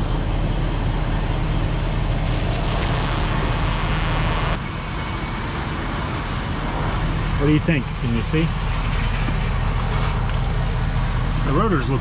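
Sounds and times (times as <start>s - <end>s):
vehicle engine rumbling: 0.0s - 12.0s.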